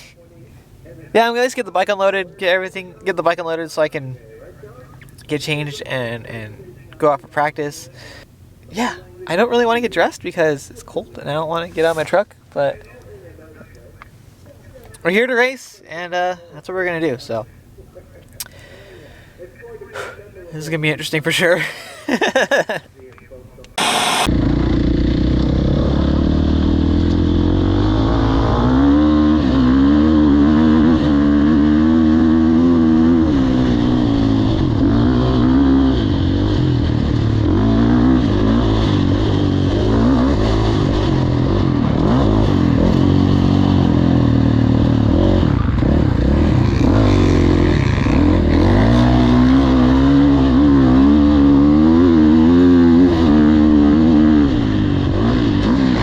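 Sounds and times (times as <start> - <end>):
dirt bike engine revving: 23.8 - 56.0.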